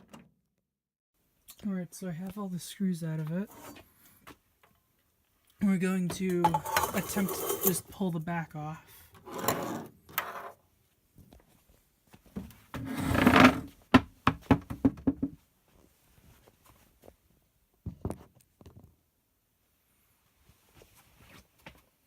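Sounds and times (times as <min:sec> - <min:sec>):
plastic cabinet scraping: 0:12.8 - 0:13.7.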